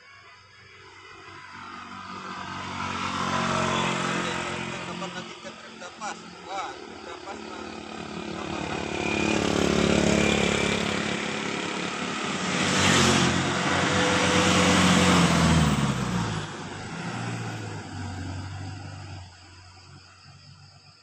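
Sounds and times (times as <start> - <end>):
bus driving past: 0.2 - 20.9.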